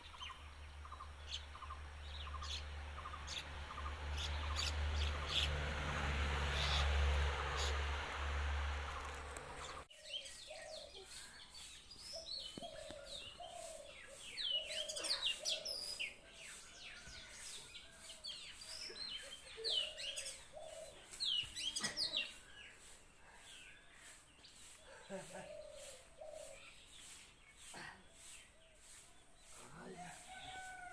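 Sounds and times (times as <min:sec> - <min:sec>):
birds chirping: 0:08.8 - 0:30.9.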